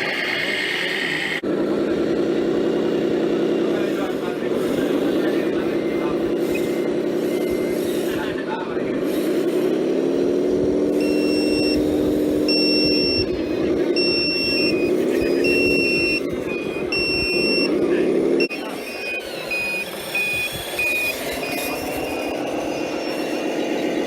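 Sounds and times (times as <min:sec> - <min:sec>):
simulated engine revving: 0:00.0 - 0:24.0
reversing beeper: 0:03.8 - 0:08.4, 0:10.9 - 0:24.0
short quick beeps: 0:11.0 - 0:11.9, 0:12.5 - 0:13.3, 0:14.0 - 0:17.7, 0:18.4 - 0:22.4.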